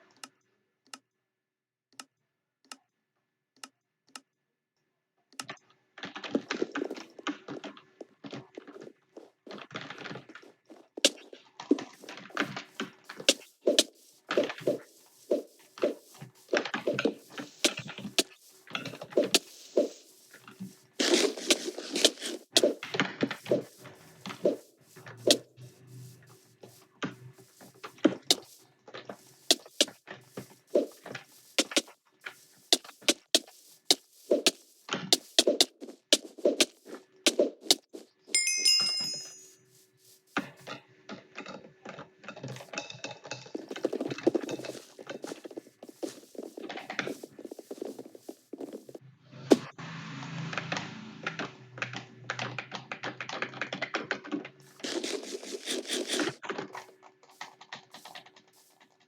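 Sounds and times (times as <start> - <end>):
short chime: 38.4 - 39.6.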